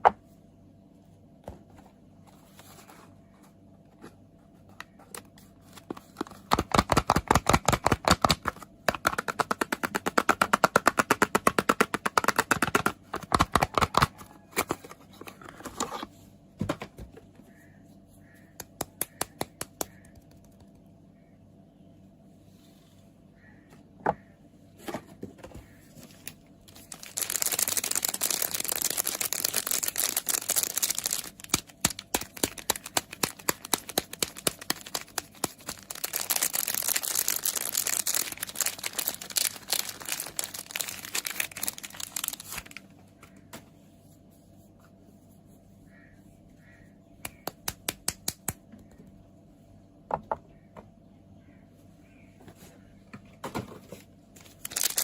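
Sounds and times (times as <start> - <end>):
wrapper crinkling and tearing: 26.0 - 42.8, 54.4 - 55.0.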